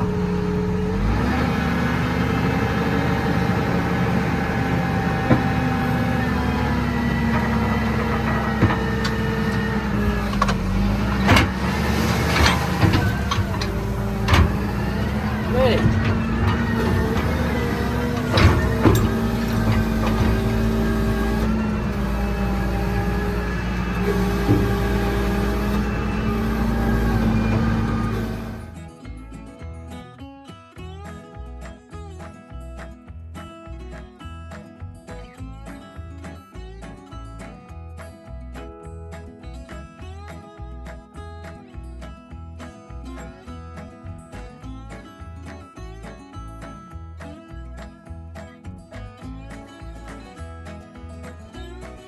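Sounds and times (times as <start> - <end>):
tractor engine running: 0.0 - 28.9.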